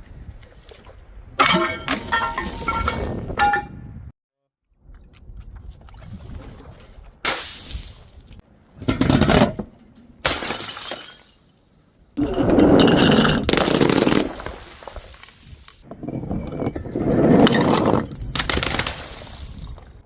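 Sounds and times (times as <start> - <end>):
glass bottles shattering: 1.4 - 3.5, 10.2 - 11.5, 12.2 - 15.4, 16.9 - 19.8.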